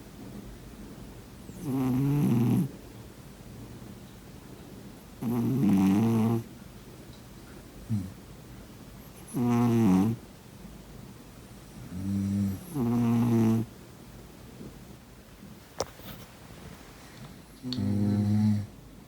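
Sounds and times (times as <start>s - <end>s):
cat snoring: 1.6s - 2.7s, 5.2s - 6.4s, 9.2s - 10.2s, 11.9s - 13.7s, 17.8s - 18.7s.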